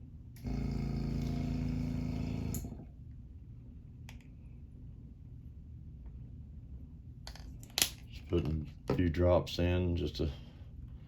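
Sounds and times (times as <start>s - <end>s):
small electric motor running: 0.4s - 2.7s.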